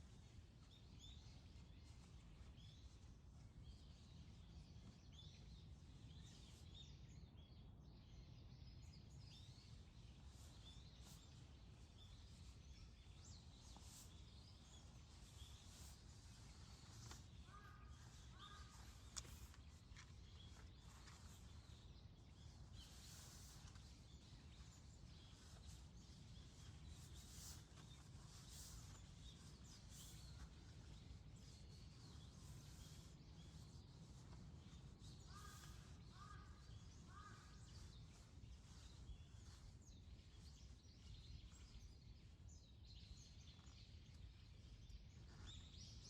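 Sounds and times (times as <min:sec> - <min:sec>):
birds chirping: 0:09.6 - 0:46.0.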